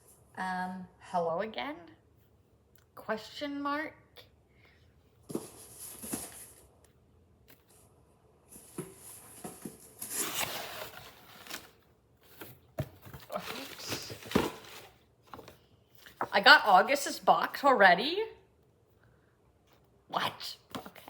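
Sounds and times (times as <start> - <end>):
cardboard packaging tearing: 10.0 - 11.8.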